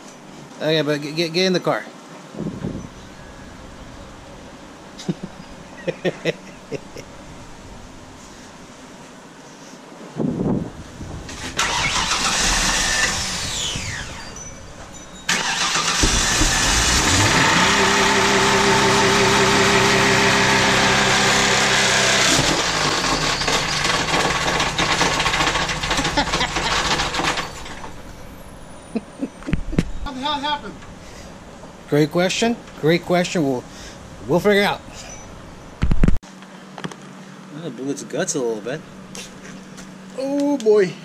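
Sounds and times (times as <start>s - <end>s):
engine revving hard: 11.4s - 14.2s, 15.3s - 27.6s
metallic clatter and banging: 22.4s - 28.0s.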